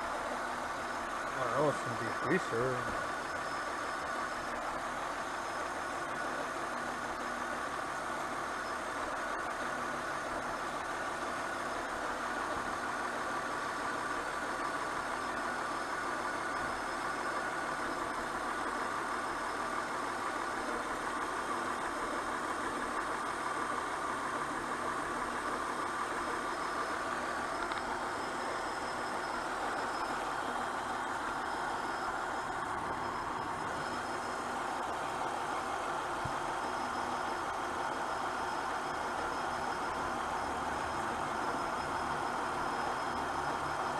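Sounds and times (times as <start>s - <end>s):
car engine idling with misfire: 0.0s - 43.9s.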